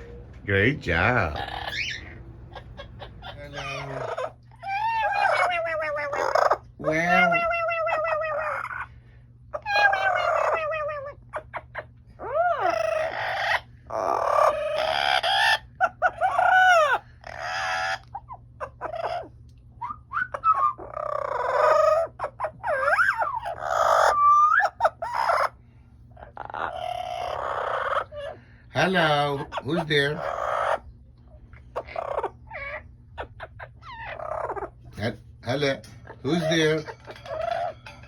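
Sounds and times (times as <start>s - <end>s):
parrot squawking and whistling: 1.2s - 8.9s, 9.6s - 25.4s.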